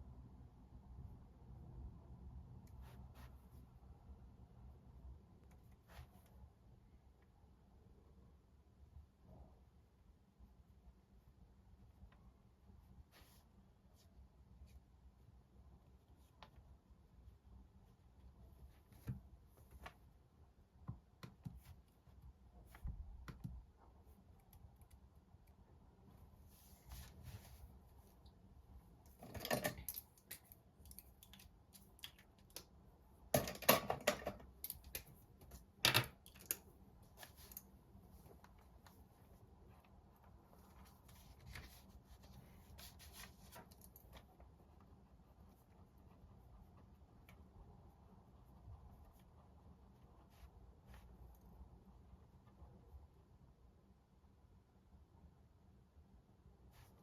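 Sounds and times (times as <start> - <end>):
pen clicks and scratches: 29.1 - 37.7.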